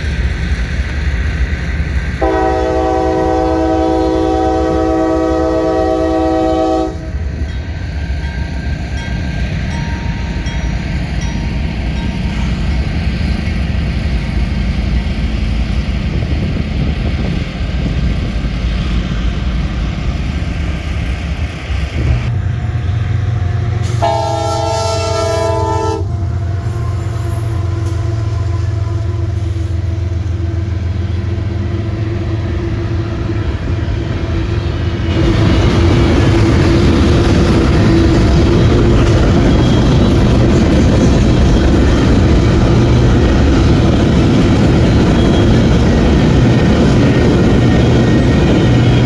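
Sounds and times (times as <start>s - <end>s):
train rumbling: 0.0s - 49.0s
train horn chord: 2.2s - 7.2s, 23.8s - 29.9s.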